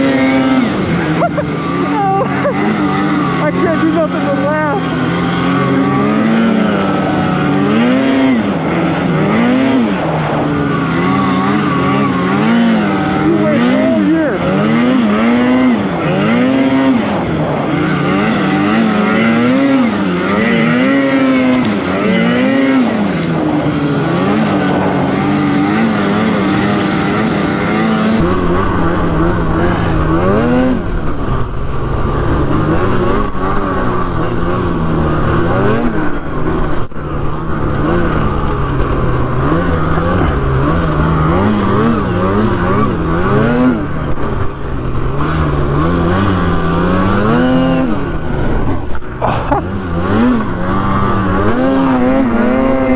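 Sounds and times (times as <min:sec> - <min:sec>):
snowmobile engine revving: 0:00.0 - 0:52.9.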